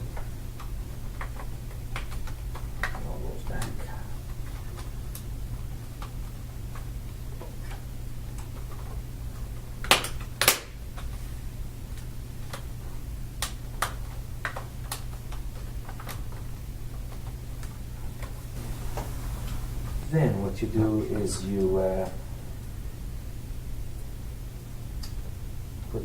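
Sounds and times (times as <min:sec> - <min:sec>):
steady low hum: 0:00.0 - 0:26.0
plastic clicks and snaps: 0:13.4 - 0:18.4.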